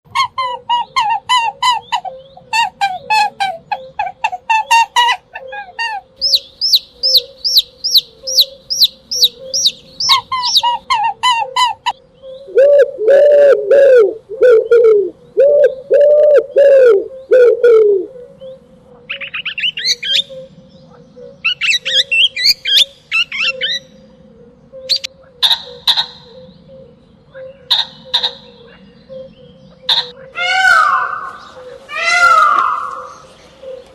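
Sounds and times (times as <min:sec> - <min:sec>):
bird twittering: 0:00.1 - 0:12.6, 0:18.3 - 0:33.9
lower louder bird calls: 0:00.1 - 0:33.9
high falling bird chirps: 0:06.2 - 0:12.6.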